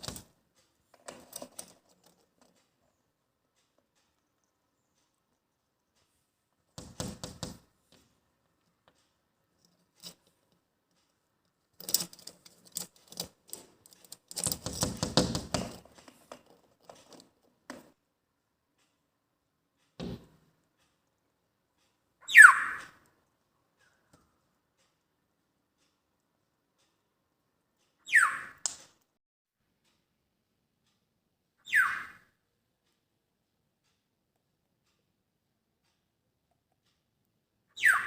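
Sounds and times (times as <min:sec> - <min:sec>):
tapping scratching and clattering: 0:00.0 - 0:03.0, 0:11.5 - 0:17.9
parrot squawk: 0:22.2 - 0:22.9, 0:28.1 - 0:28.6, 0:31.6 - 0:32.2, 0:37.8 - 0:38.0.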